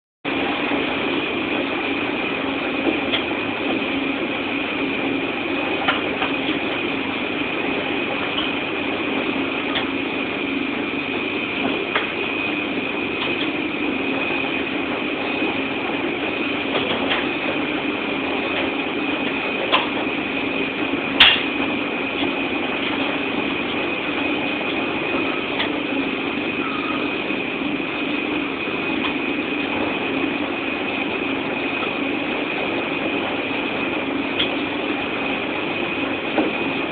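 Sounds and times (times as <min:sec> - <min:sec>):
washing machine humming: 0:00.3 - 0:36.9.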